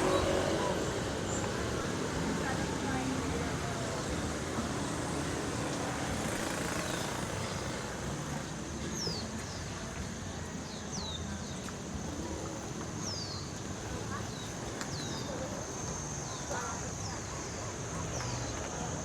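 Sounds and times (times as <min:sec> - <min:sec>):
passing vehicles hum: 0:00.0 - 0:07.5.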